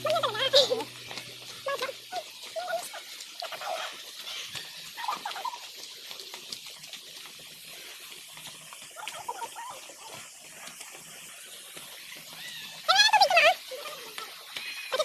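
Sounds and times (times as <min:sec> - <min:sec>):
faint wavering calls: 0:11.2 - 0:15.0.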